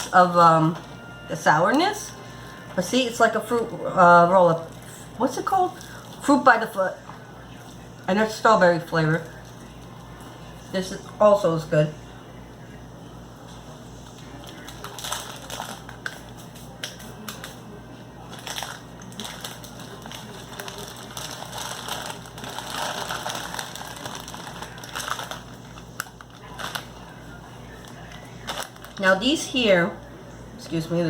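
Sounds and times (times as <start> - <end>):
plastic packaging crinkling: 14.2 - 17.6, 18.2 - 29.3.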